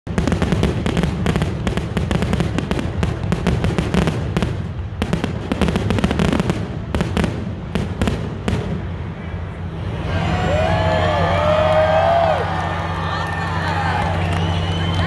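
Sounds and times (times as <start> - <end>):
fireworks bangs and crackles: 0.0 - 9.8.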